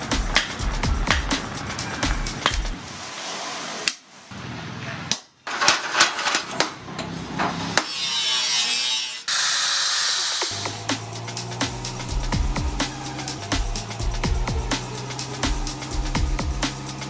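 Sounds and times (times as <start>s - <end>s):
rushing hiss: 0.0s - 3.9s, 9.3s - 17.0s.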